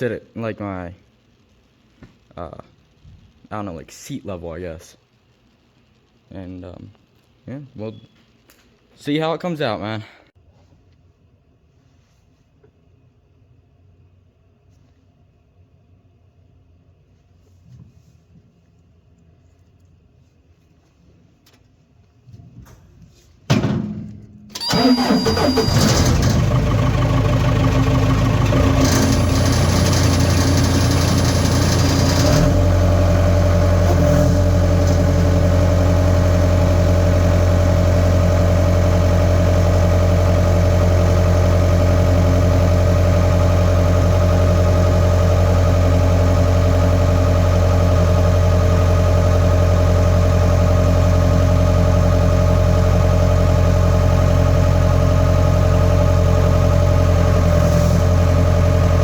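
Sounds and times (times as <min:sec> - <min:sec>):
skid steer engine idling: 0:24.6 - 0:59.0.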